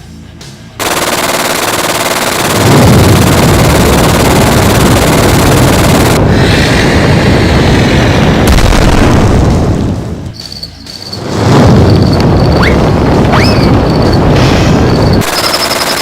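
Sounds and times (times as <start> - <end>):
machine-gun fire: 0.8 - 6.2, 15.2 - 16.0
booms: 11.2 - 15.2.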